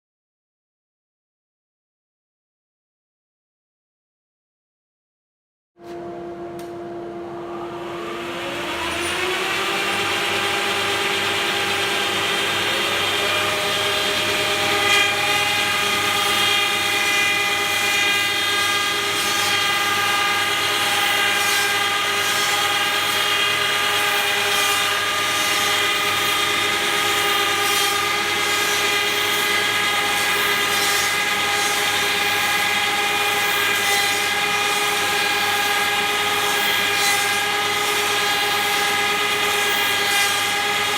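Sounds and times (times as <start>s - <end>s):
machine motors whining: 5.8s - 17.3s.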